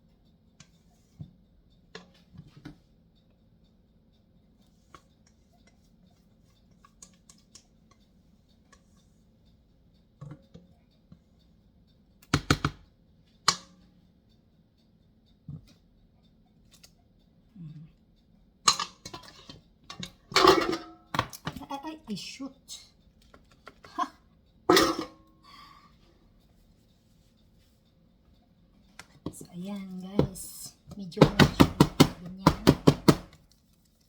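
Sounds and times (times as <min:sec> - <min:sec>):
faint steady hum: 0:00.0 - 0:34.0
cake pans and utensils clattering: 0:18.7 - 0:21.5, 0:23.7 - 0:25.2.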